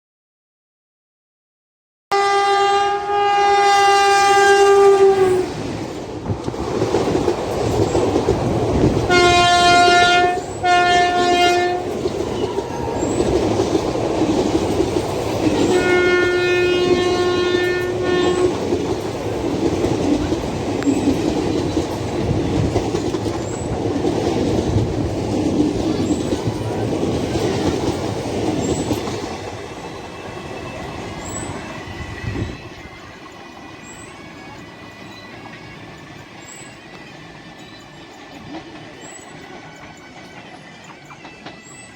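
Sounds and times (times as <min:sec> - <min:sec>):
locomotive horn blasts: 0:02.1 - 0:05.6, 0:09.1 - 0:13.0, 0:15.6 - 0:18.6
train coaches rumbling: 0:03.4 - 0:41.9
wheels clacking over rail joints: 0:05.6 - 0:41.9.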